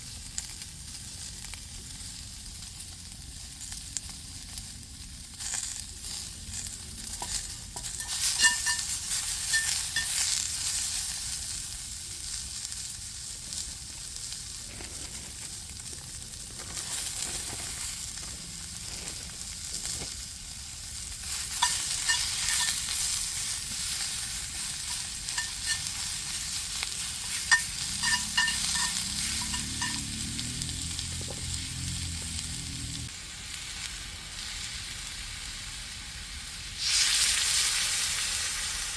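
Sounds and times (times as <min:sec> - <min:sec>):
food sizzling in a skillet: 0:00.0 - 0:38.9
metallic clinks and scrapes of stirring: 0:07.1 - 0:10.9, 0:21.4 - 0:30.2.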